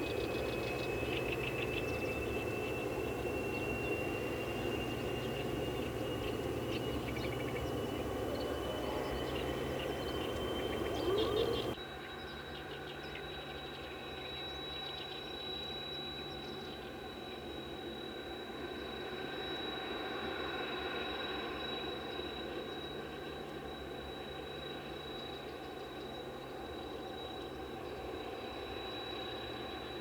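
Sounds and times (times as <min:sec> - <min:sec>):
faint bird chirps: 0:00.0 - 0:16.9
distant machinery hum: 0:00.0 - 0:30.0
high-pitched whine: 0:00.0 - 0:30.0.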